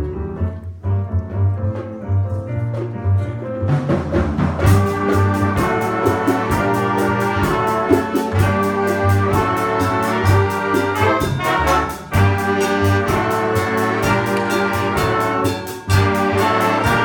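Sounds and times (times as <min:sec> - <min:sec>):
jazz band playing: 0:00.0 - 0:17.0
quick percussion beat: 0:00.2 - 0:17.0
brass and saxophones holding chords: 0:04.6 - 0:17.0.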